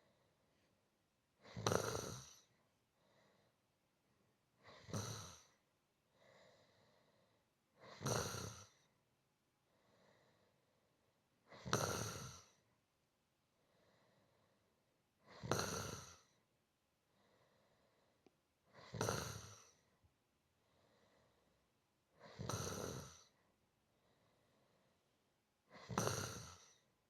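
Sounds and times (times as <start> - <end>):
person snoring softly: 1.4 - 3.6, 4.6 - 9.0, 11.4 - 12.7, 15.2 - 16.4, 17.1 - 19.9, 20.7 - 23.4, 25.7 - 26.9.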